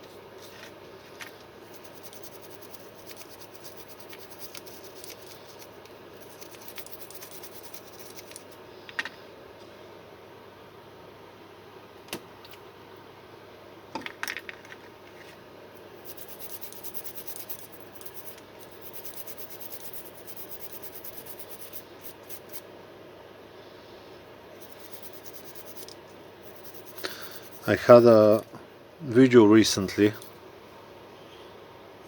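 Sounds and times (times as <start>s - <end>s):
scratchy scrubbing of circuit board: 1.7s - 8.5s, 16.0s - 22.6s, 24.6s - 28.4s.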